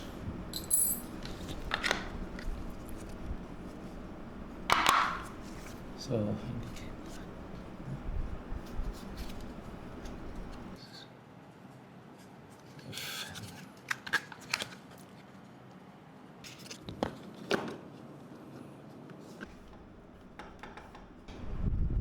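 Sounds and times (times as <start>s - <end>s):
plastic covers rustling: 0.0s - 10.8s
plastic clicks and taps: 4.7s - 5.4s.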